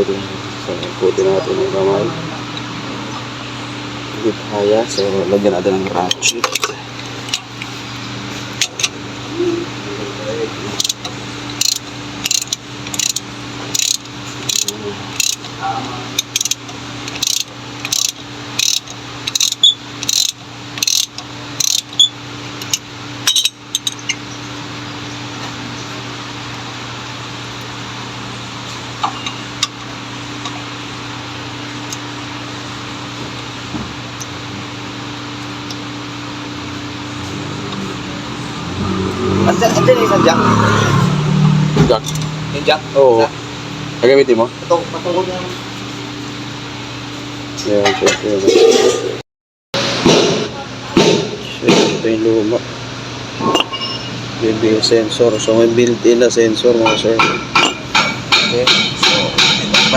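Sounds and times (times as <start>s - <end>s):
steady low hum: 0.0s - 49.2s
hand ratchet clicking: 10.8s - 15.5s, 16.2s - 24.1s.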